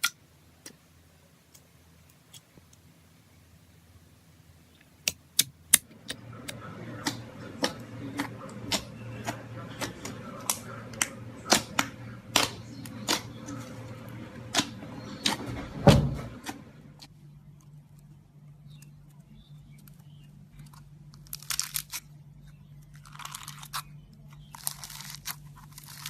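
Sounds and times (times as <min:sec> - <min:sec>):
slime squishing: 0:06.0 - 0:17.1, 0:19.9 - 0:26.0
heavy thud: 0:15.2 - 0:16.6.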